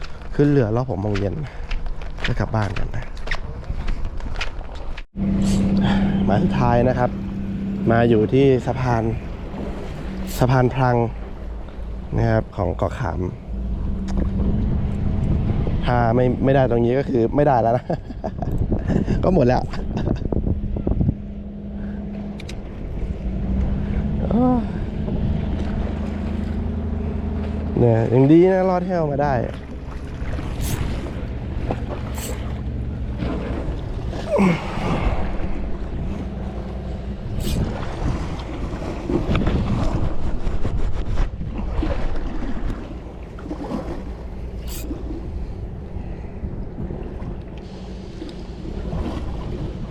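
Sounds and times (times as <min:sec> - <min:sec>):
boat engine drone: 0:04.6 - 0:49.9
water washing: 0:04.7 - 0:17.2, 0:21.2 - 0:40.2
wind buffeting the microphone: 0:12.0 - 0:26.3, 0:30.2 - 0:44.0.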